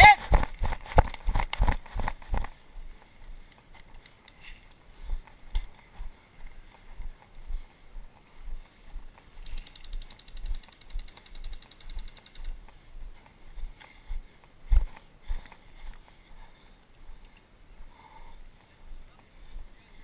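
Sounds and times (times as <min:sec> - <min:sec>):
footsteps soft thuds: 0:00.3 - 0:09.5, 0:12.5 - 0:17.2.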